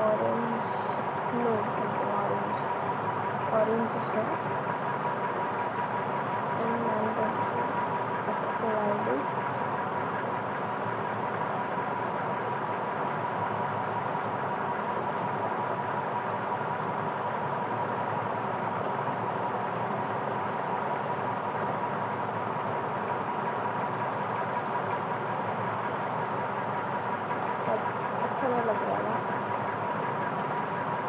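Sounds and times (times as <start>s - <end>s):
electric fan humming: 0.0s - 31.0s
faint steady whine: 0.0s - 31.0s.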